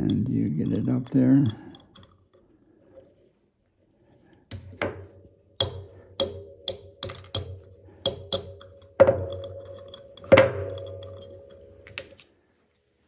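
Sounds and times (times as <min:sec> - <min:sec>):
small hammer tapping metal punch: 0:04.5 - 0:12.2.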